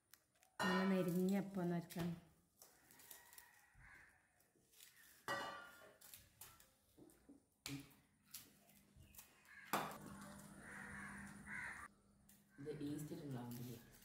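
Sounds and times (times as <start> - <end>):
dishes clinking: 5.3 - 5.8.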